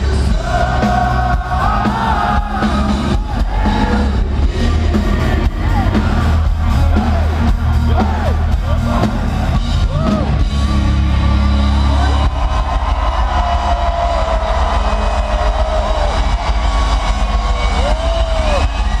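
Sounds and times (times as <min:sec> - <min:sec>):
rock band heavy chord: 0:00.0 - 0:12.5
crowd cheering: 0:00.0 - 0:19.0
crowd whistling: 0:04.7 - 0:19.0.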